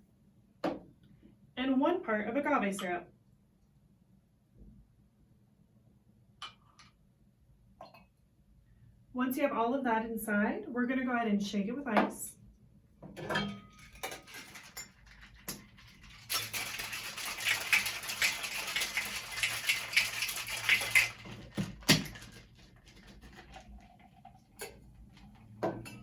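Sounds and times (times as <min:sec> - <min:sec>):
ice rattling in cocktail shaker: 0:13.6 - 0:25.4.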